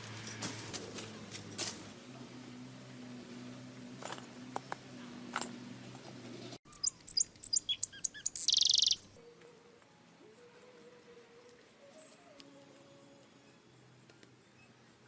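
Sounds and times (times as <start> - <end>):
bird chirping: 6.7 - 9.2
buzzy bird trill: 6.7 - 9.2.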